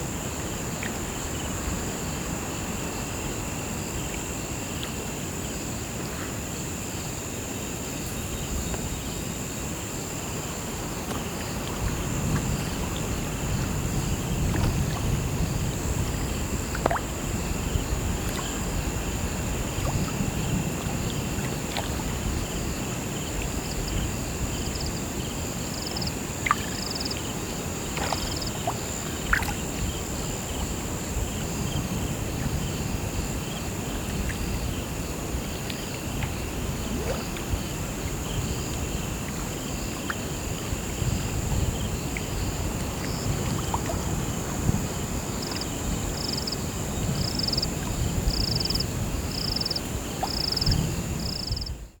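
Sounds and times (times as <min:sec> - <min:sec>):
crickets trilling: 0:00.0 - 0:52.0
pulsing insect chirp: 0:00.0 - 0:52.0
river water lapping: 0:00.1 - 0:51.7.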